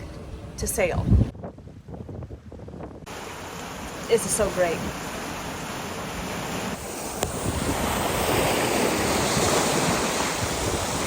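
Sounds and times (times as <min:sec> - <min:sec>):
wind buffeting microphone: 0:00.0 - 0:11.0
sea water rushing: 0:03.0 - 0:11.0.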